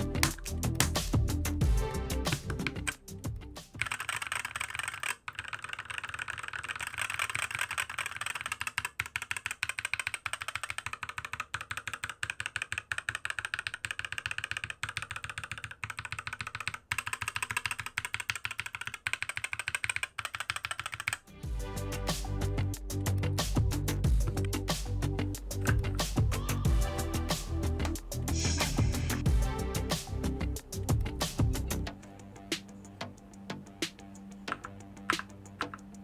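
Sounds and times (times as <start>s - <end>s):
music: 0.0s - 4.9s, 21.2s - 36.0s
mechanical keyboard typing: 3.7s - 21.2s, 25.5s - 26.0s, 34.5s - 36.0s.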